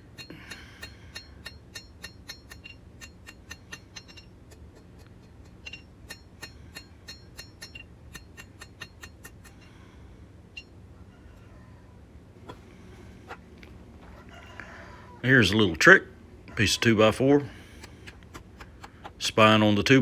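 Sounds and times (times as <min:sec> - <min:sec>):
hammer tapping steel blade: 0:00.0 - 0:09.7.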